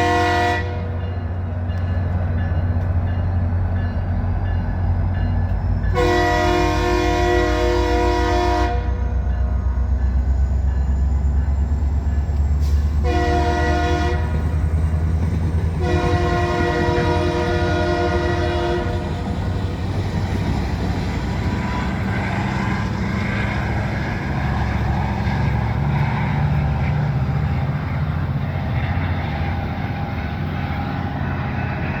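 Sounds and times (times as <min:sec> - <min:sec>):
train horn blasts: 0:00.0 - 0:01.1, 0:05.9 - 0:09.3, 0:12.6 - 0:14.7, 0:15.7 - 0:19.5
train rumble and wheel noise: 0:00.0 - 0:32.0.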